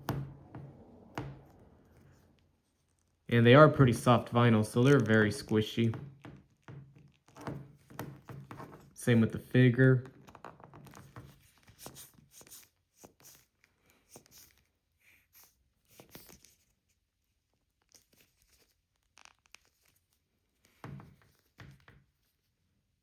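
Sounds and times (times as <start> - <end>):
vinyl toy rustling and tapping: 3.8 - 9.0, 10.1 - 14.6.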